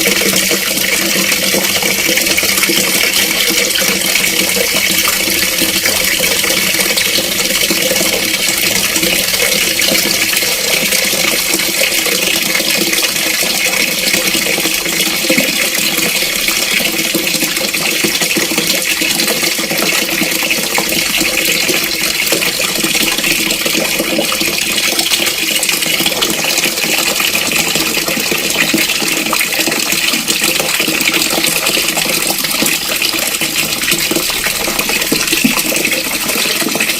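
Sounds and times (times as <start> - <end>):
tap water filling a bucket: 0.0 - 36.9.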